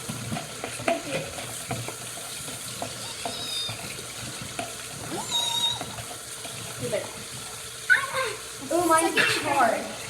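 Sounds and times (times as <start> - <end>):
spoon stirring slime in a bowl: 0.0 - 6.9.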